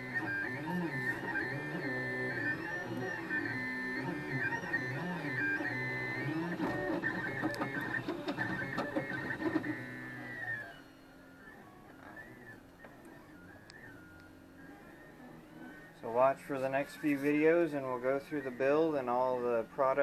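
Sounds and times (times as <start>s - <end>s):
stepper motors whining: 0.0s - 20.0s.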